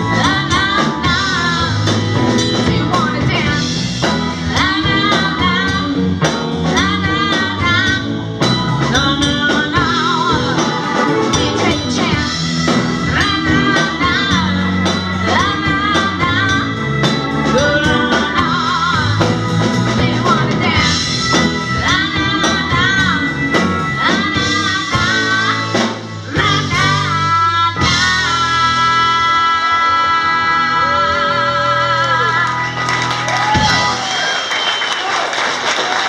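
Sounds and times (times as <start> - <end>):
steady drum beat: 0.0 - 27.1, 33.3 - 34.2
guitar: 0.0 - 34.9
person singing: 4.4 - 32.8.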